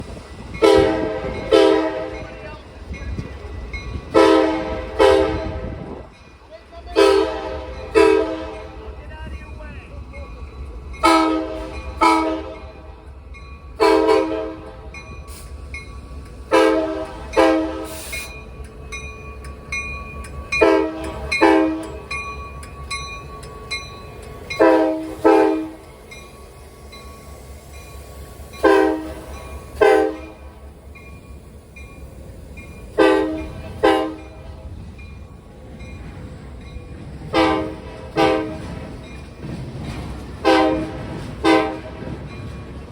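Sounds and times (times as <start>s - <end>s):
locomotive air horn blasts: 0.6s - 2.2s, 4.2s - 5.9s, 7.0s - 8.8s, 11.0s - 12.9s, 13.8s - 14.9s, 16.5s - 18.1s, 20.6s - 22.0s, 24.6s - 25.8s, 28.6s - 30.4s, 33.0s - 34.2s, 37.3s - 38.6s, 40.4s - 42.0s.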